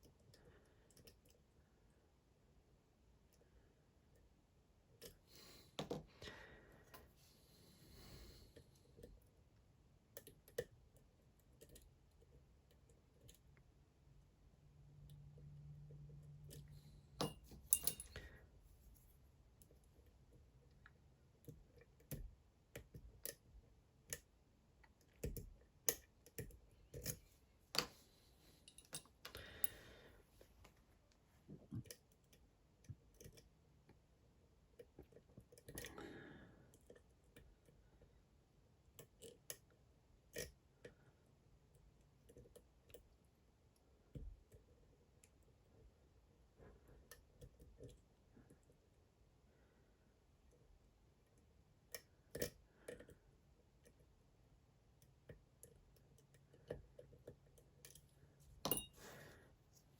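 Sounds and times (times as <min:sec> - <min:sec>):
lock pick metallic clicks: 0:17.2 - 0:18.2.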